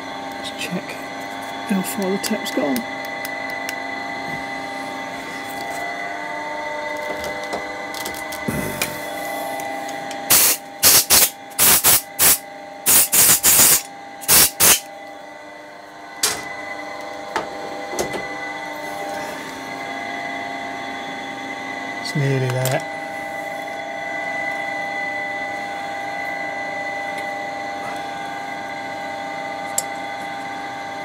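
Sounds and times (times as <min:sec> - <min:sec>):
low workshop hum: 0:00.0 - 0:31.0
pressurised nozzle hissing bursts: 0:10.3 - 0:14.8.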